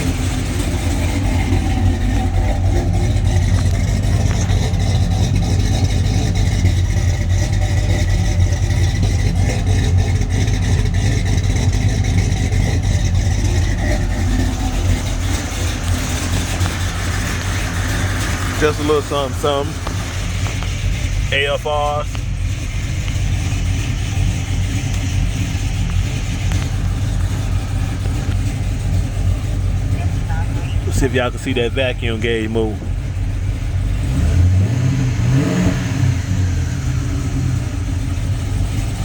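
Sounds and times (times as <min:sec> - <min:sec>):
car engine idling: 0:00.0 - 0:39.0.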